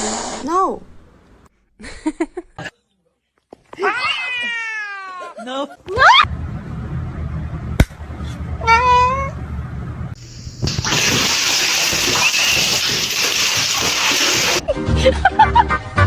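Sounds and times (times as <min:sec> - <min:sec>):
cat meowing: 0:08.6 - 0:09.4.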